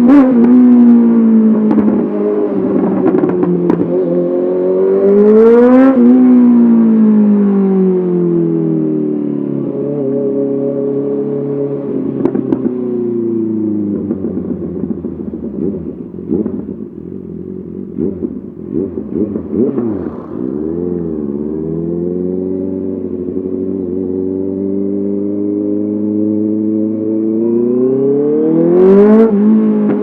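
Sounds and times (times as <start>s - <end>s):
motorcycle engine running: 13.5s - 26.1s.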